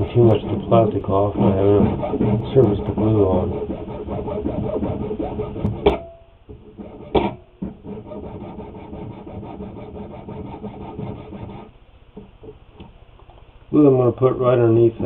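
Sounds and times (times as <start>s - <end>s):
file rasping on plastic: 0.0s - 6.0s, 6.6s - 11.7s
sharp knock: 5.7s - 6.2s.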